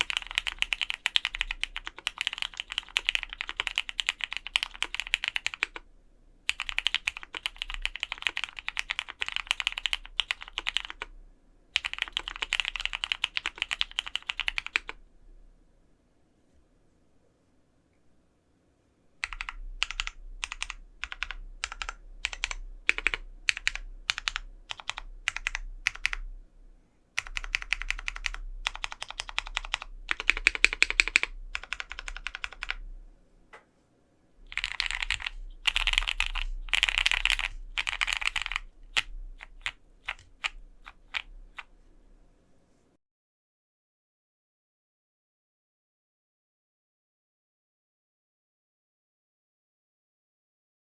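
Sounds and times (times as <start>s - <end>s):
mechanical keyboard typing: 0.0s - 5.8s, 6.5s - 11.1s, 11.8s - 15.0s, 19.2s - 26.2s, 27.2s - 32.8s, 34.5s - 41.7s.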